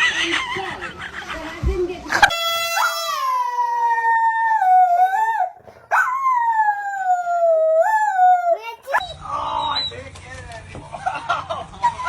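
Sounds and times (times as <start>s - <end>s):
dog howling: 2.2s - 9.1s.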